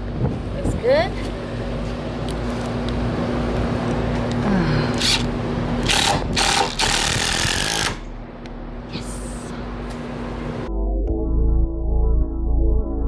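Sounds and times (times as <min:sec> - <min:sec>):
power drill motor whine: 0:01.3 - 0:08.1
screws grinding: 0:04.9 - 0:08.0.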